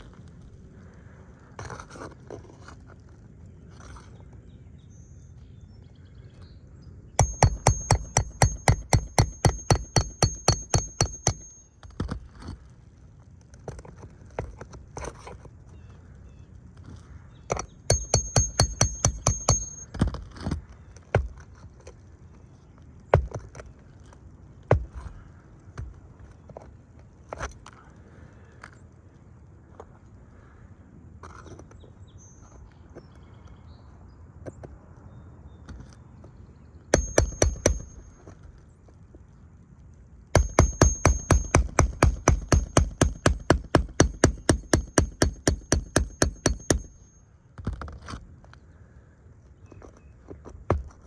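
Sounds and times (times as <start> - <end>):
rapid sharp knocks with ringing: 7.2 - 11.7, 17.5 - 20.1, 36.9 - 38.2, 40.4 - 47.0.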